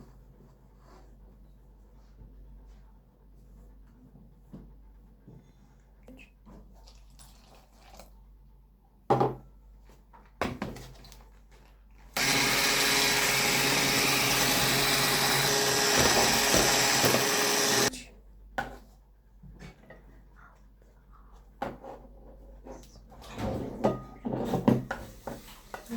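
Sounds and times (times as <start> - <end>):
electric kitchen mixer running: 12.2 - 17.9.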